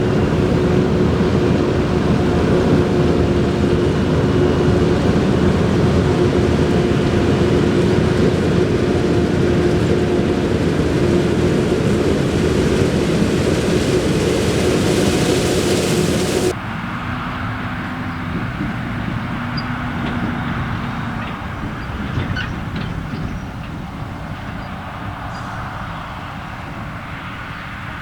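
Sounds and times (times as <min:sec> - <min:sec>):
heavy farm machinery running: 0:00.0 - 0:16.6.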